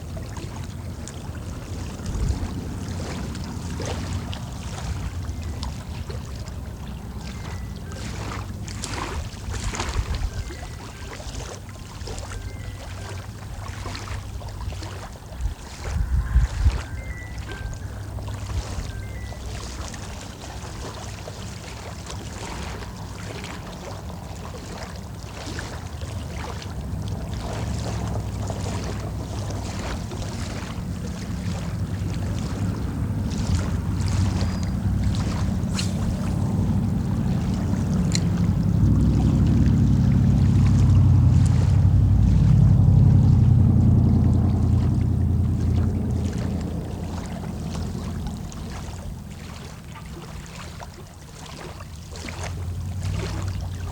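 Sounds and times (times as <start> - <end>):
water lapping and splashing: 0.0 - 53.9
motor engine rumble: 11.7 - 50.2, 52.3 - 53.9.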